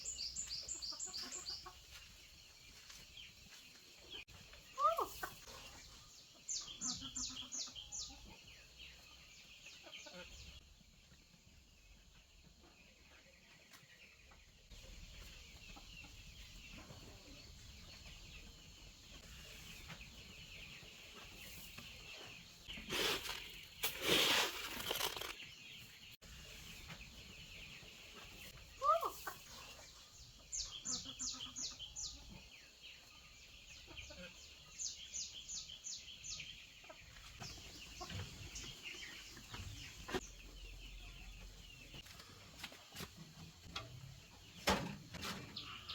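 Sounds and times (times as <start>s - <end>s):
chickens clucking: 0.0s - 45.9s
loud rustling: 22.9s - 25.4s.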